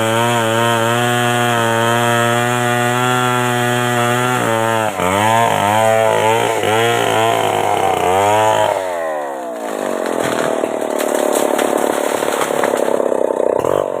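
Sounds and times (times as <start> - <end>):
chainsaw revving: 0.0 - 14.0.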